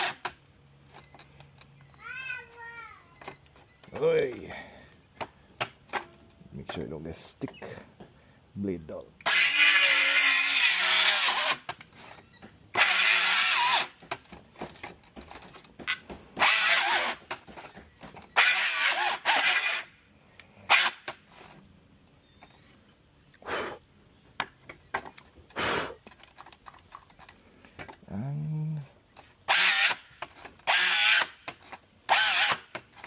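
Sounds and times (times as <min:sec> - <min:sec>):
circular saw cutting board: 0:09.2 - 0:12.2, 0:12.8 - 0:14.0, 0:15.8 - 0:19.9, 0:29.4 - 0:33.0.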